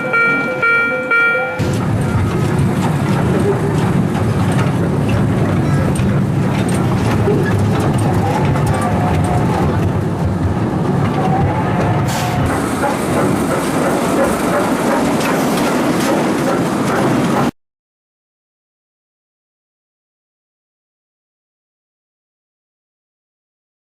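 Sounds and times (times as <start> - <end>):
miniature train rumbling on track: 0.0 - 17.6.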